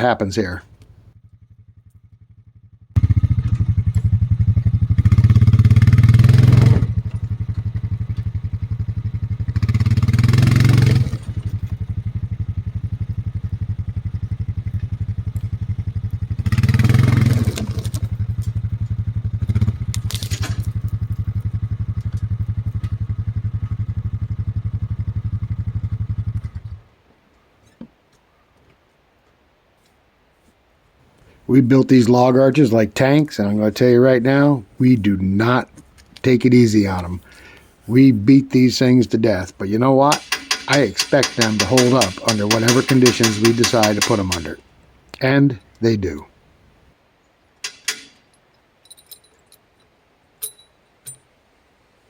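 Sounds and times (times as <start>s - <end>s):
atv engine revving: 0.0s - 26.9s, 31.4s - 46.3s
clattering knocks: 40.1s - 44.6s, 47.6s - 48.2s.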